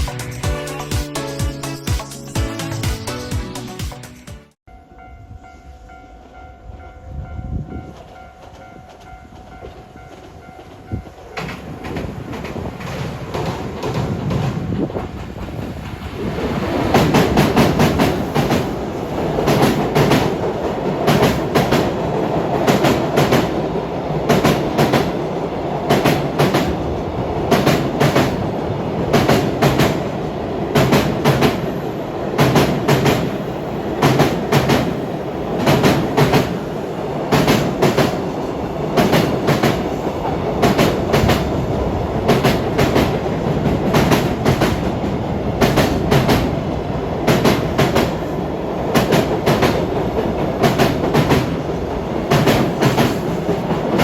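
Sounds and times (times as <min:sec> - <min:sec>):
freight train rumble: 0:04.7 - 0:54.0
train wheels clicking over rail joints: 0:08.0 - 0:16.2, 0:32.3 - 0:33.4, 0:42.2 - 0:45.0, 0:48.9 - 0:54.0.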